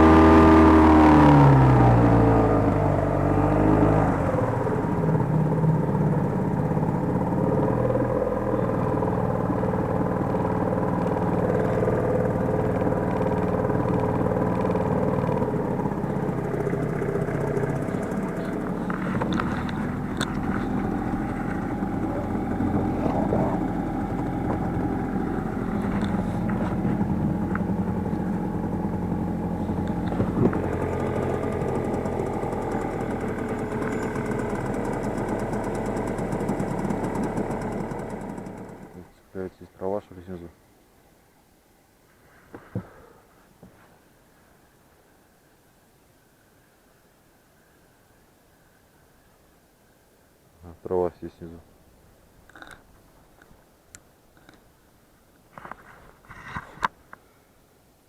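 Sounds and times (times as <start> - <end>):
boat motor running: 0.0 - 39.1.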